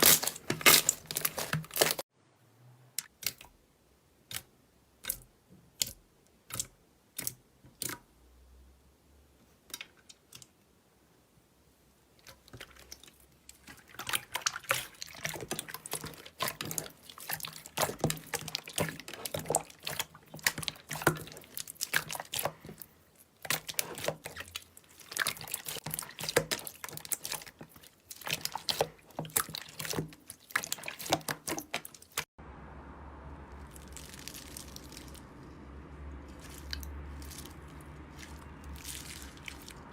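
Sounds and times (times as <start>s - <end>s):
steady low hum: 32.4s - 39.9s.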